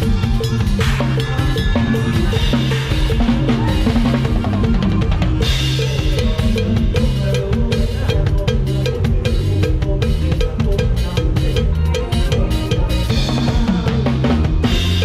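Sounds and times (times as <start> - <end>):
drum kit fast beat: 0.0 - 15.0
held bass notes: 0.0 - 15.0.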